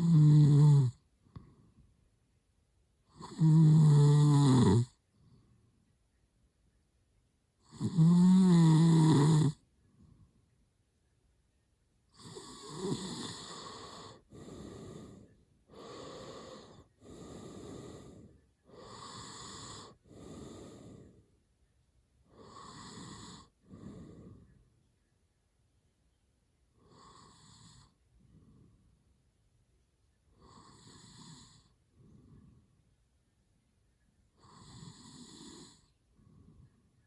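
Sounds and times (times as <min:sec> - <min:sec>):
man snoring: 0:00.0 - 0:01.0, 0:03.1 - 0:05.0, 0:07.6 - 0:09.6, 0:12.2 - 0:21.0, 0:22.3 - 0:24.3, 0:26.8 - 0:28.0, 0:30.4 - 0:31.7, 0:34.4 - 0:35.9.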